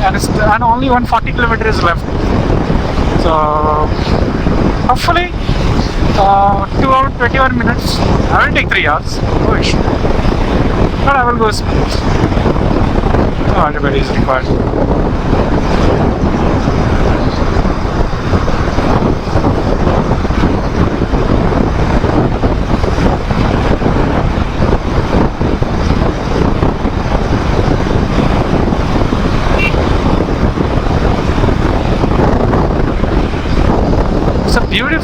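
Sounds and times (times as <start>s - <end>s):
road noise: 0.0s - 35.0s
wind buffeting microphone: 0.0s - 35.0s
motorcycle running: 1.6s - 35.0s.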